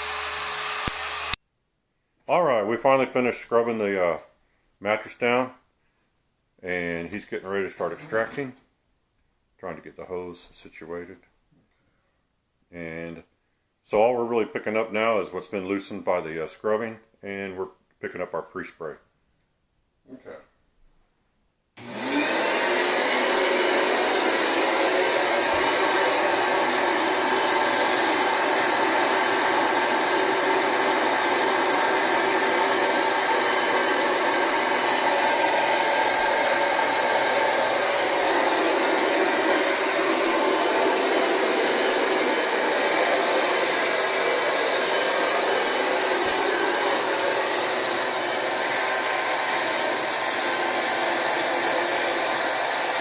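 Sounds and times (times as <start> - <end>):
vacuum motor whining: 0.0 - 1.4, 21.8 - 53.0.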